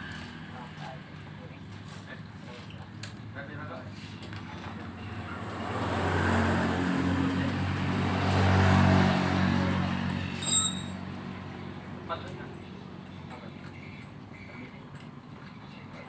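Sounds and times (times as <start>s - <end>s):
motor vehicle passing: 4.7s - 12.2s.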